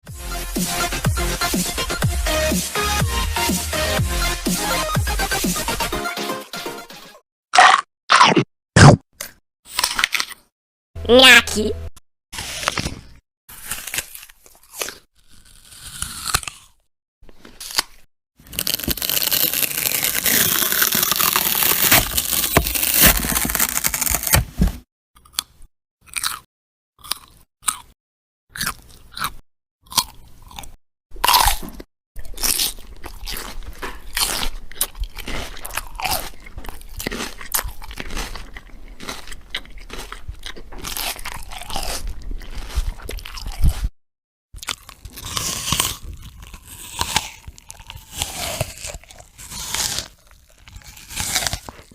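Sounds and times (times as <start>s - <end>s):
crunchy eating: 12.4s - 24.3s, 25.2s - 43.9s, 44.6s - 51.9s.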